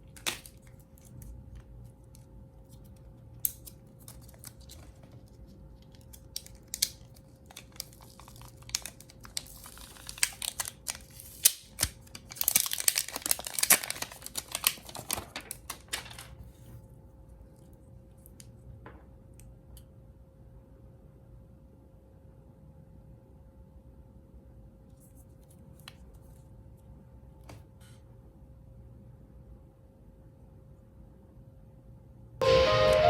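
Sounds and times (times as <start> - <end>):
plastic crinkling and tearing: 0.0 - 16.7.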